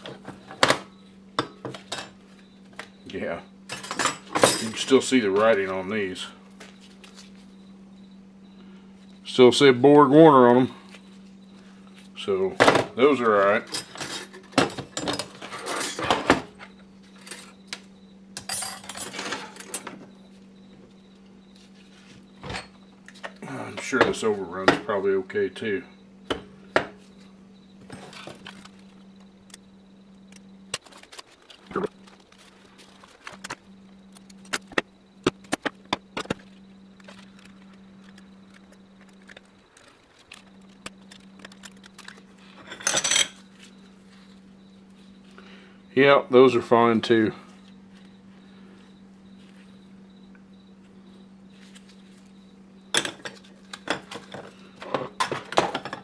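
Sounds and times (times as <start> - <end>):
faint steady hum: 0.0 - 56.0
metal parts clanking: 3.7 - 4.9, 13.6 - 17.5, 18.4 - 20.1, 39.0 - 43.4
metal clutch plates clinking: 3.7 - 5.0, 18.4 - 20.1.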